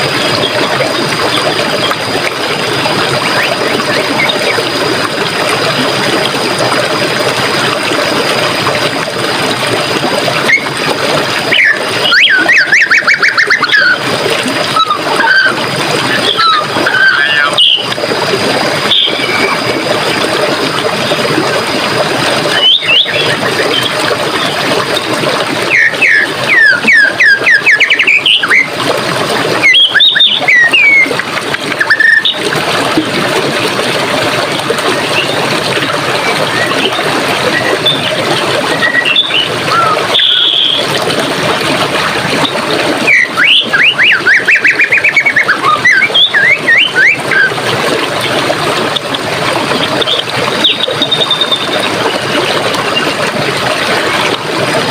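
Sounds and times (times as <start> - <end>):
stream water running: 0.0 - 54.9
songbirds singing: 16.1 - 17.9, 22.5 - 24.6, 25.6 - 28.7, 29.6 - 31.1, 38.8 - 40.8, 43.0 - 47.5, 49.8 - 51.8.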